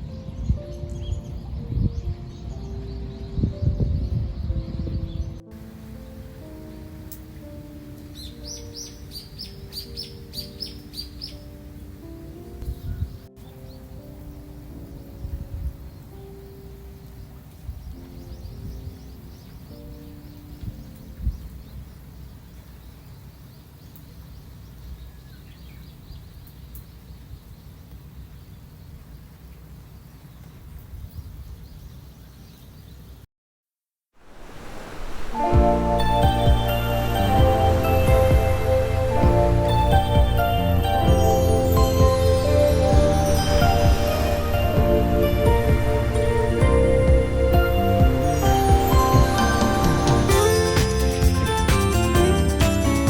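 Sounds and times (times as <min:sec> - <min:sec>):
sea and wind rumble: 0:00.0 - 0:17.0, 0:34.2 - 0:50.6
soft meditative music: 0:00.0 - 0:23.3, 0:34.2 - 0:53.0
small birds chirping: 0:06.0 - 0:33.2
faint bird chirp: 0:08.1 - 0:12.0
sea waves rumbling: 0:34.2 - 0:51.2.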